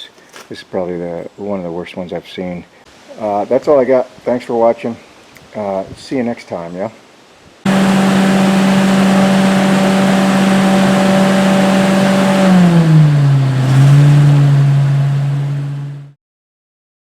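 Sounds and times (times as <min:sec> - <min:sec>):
engine running: 0:07.7 - 0:16.2.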